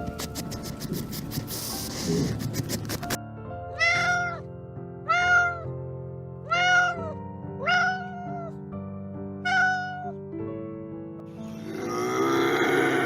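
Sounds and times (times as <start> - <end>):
background music: 0.0 - 13.0
cat meowing: 3.8 - 5.7, 6.4 - 8.6, 9.4 - 10.2.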